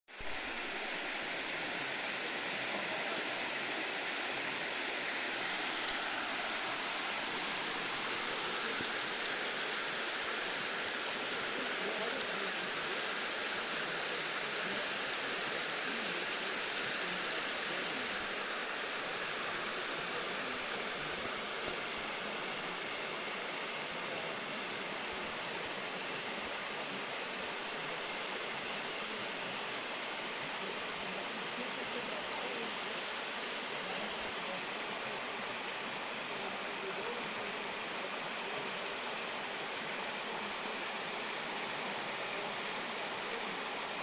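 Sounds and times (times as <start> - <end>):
water rushing: 0.1 - 44.0.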